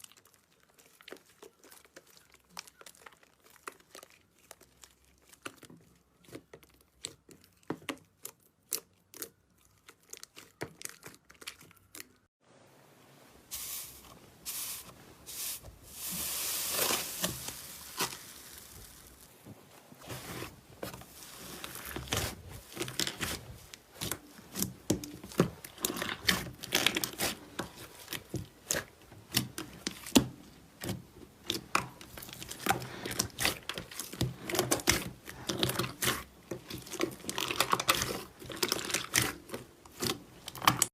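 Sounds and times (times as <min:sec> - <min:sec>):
slime crackling and popping: 0:00.0 - 0:12.2, 0:16.3 - 0:19.4, 0:21.8 - 0:40.9
tearing hiss: 0:13.5 - 0:19.3.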